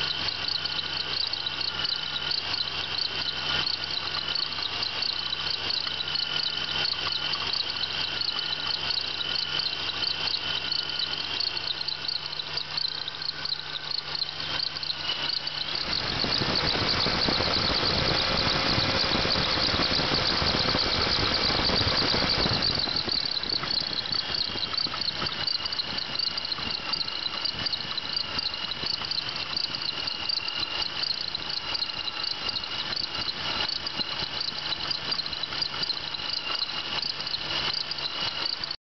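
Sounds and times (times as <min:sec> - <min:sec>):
car engine idling: 0:00.0 - 0:29.4
high squeal from belt pulley: 0:00.0 - 0:38.8.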